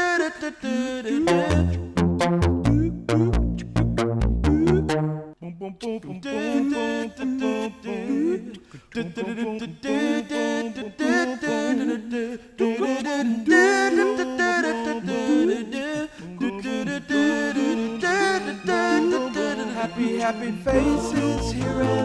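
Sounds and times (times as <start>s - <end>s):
voices singing in harmony: 0.0s - 1.9s, 5.4s - 22.0s.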